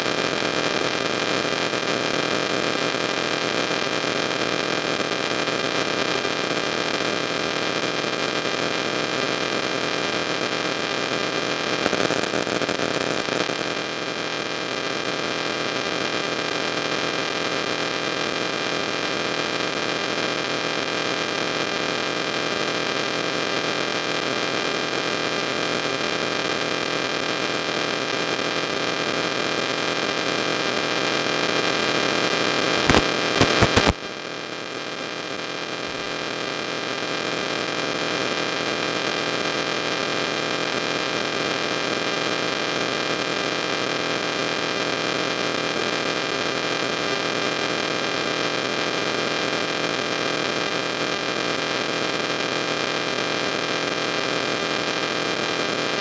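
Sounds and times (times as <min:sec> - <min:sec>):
electrical hiss and hum: 0:11.8 - 0:13.8, 0:32.8 - 0:34.0.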